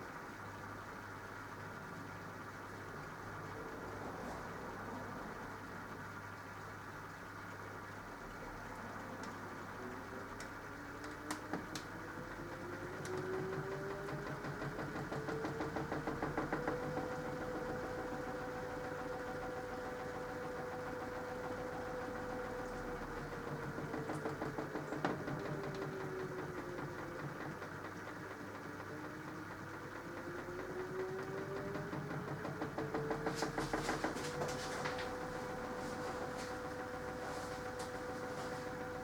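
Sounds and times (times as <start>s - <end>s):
washing machine drum motor whine: 0.0s - 39.0s.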